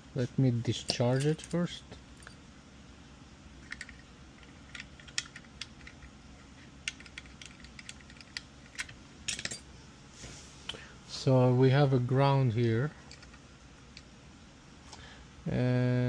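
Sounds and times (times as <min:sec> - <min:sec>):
faint low hum: 0:00.0 - 0:16.0
probe tips clicking on parts: 0:03.6 - 0:09.5.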